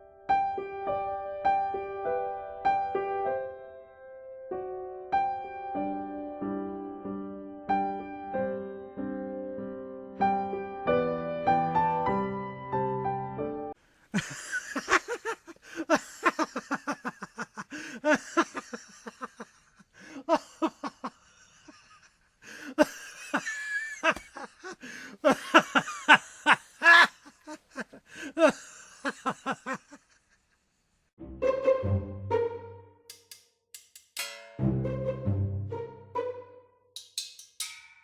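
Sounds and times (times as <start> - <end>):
people chuckling and giggling: 14.1 - 30.4.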